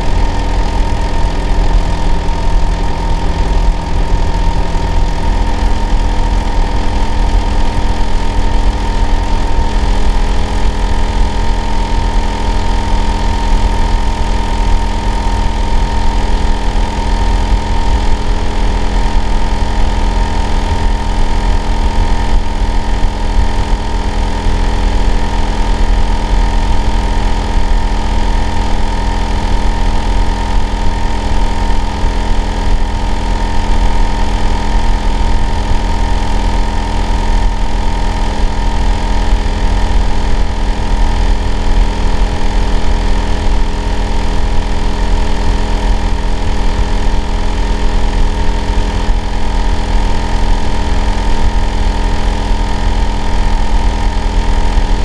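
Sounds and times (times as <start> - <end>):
high whine: 0.0 - 23.8.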